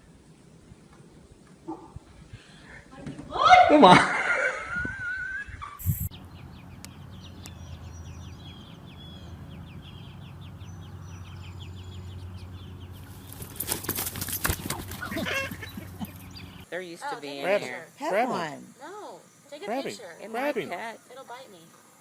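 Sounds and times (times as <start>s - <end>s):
chickens chirping and clucking: 5.5s - 16.7s
rustle like flapping wings: 12.9s - 16.4s.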